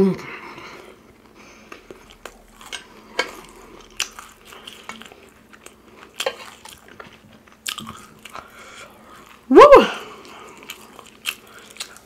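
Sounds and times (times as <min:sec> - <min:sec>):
chewing and biting: 0:01.7 - 0:09.5, 0:10.1 - 0:12.0
clicks and crunches from utensils: 0:06.2 - 0:07.1.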